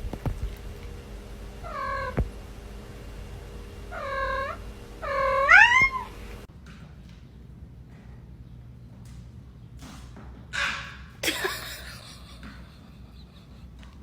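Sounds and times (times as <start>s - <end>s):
cat meowing: 1.6s - 2.2s, 3.9s - 6.2s.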